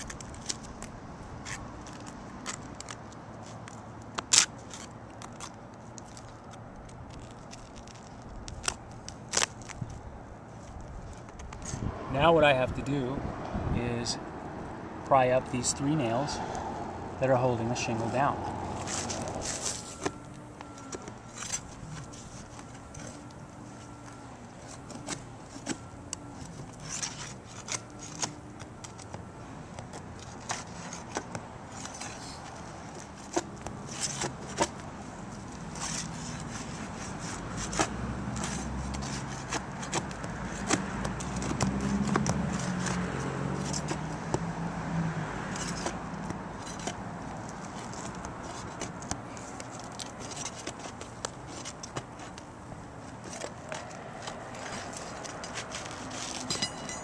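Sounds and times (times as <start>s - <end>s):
metal tool scraping shingle: 26.4s - 29.1s, 30.2s - 34.8s, 35.7s - 44.1s, 45.5s - 46.0s, 46.6s - 52.5s, 53.1s - 57.0s.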